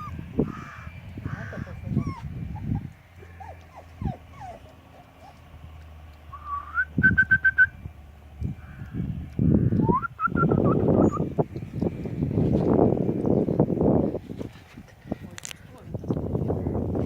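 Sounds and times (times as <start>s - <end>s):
puppies whining: 0.0s - 5.6s, 10.7s - 11.7s
rustling and shuffling: 14.2s - 15.7s.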